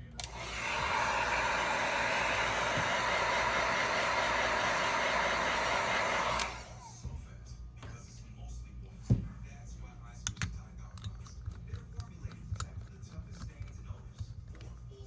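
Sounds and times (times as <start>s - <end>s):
air blower hissing: 0.0s - 7.0s.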